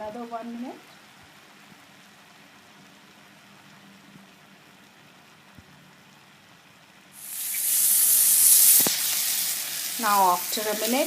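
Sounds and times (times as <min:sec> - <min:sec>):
food sizzling in a wok: 0:07.1 - 0:11.0.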